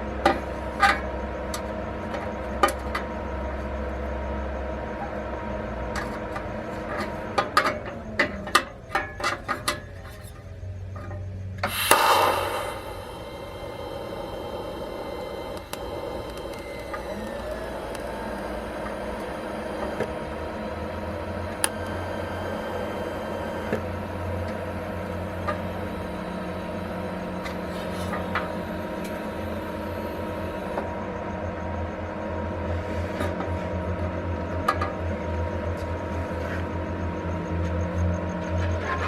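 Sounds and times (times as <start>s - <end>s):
welding arc buzzing: 11.7s - 30.8s.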